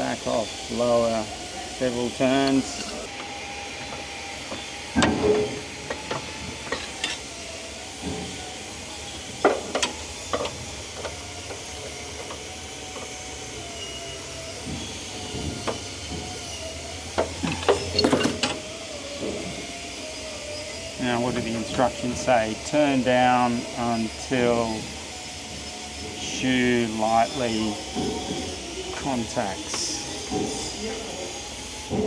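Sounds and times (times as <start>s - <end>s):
spanner clicking and clanking: 1.0s - 7.3s, 9.2s - 13.6s, 14.5s - 19.6s, 21.5s - 30.8s.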